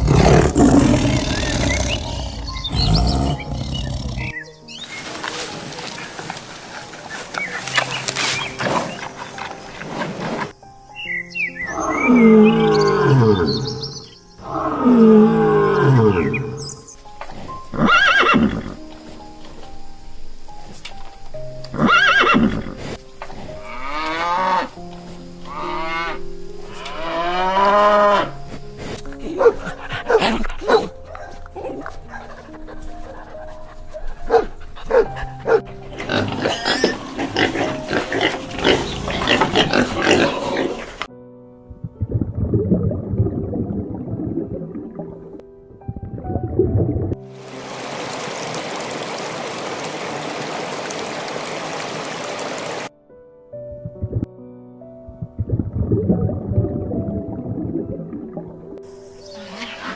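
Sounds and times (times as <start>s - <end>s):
big cat roaring: 0.0s - 4.4s, 14.4s - 16.6s, 35.5s - 41.1s
pigs calling: 0.0s - 10.5s, 25.4s - 41.1s, 59.2s - 59.9s
horse whinnying: 17.7s - 18.8s, 21.8s - 22.8s.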